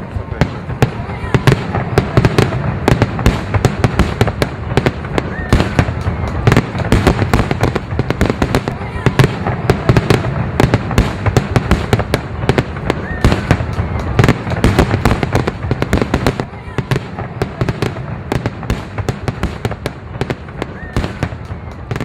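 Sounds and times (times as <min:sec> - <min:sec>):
fireworks crackling pops: 0:00.0 - 0:22.0.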